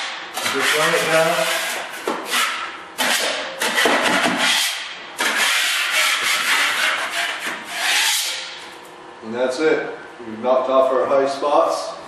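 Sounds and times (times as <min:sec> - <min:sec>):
drywall knife scraping compound: 0:00.0 - 0:08.6.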